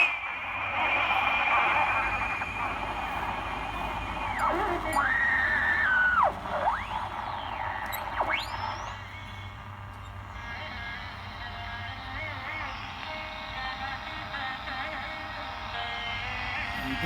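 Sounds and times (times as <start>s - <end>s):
radio whistle swooping in pitch: 0.0s - 9.7s
radio hiss: 0.0s - 17.0s.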